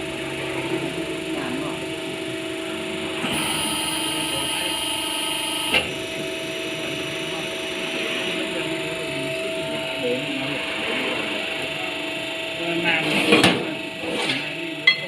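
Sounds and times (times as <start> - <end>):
machine motor hum: 0.0 - 14.0
high whine: 3.2 - 13.0.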